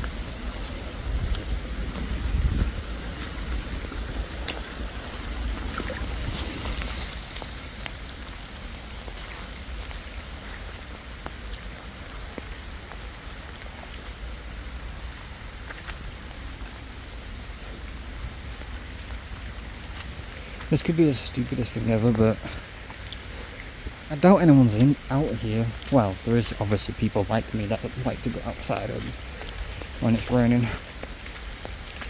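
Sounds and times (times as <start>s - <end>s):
wind rumble on microphone: 0.0s - 24.1s
raindrops ticking near microphone: 0.0s - 32.0s
steady rain: 0.0s - 32.0s.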